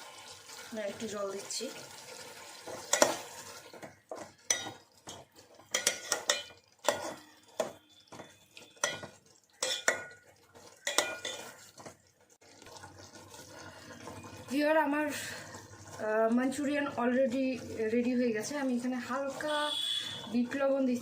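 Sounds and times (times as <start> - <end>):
metal spoon scraping a pan: 2.5 - 12.0.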